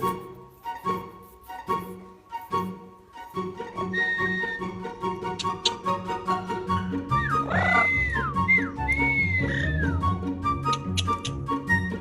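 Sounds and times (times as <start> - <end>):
instrumental background music: 0.0 - 12.0.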